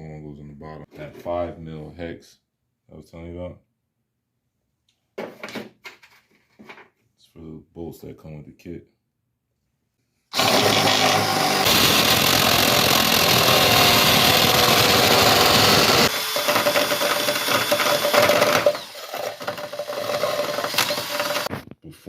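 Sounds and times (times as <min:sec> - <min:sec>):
power drill boring through steel: 0:10.3 - 0:21.5.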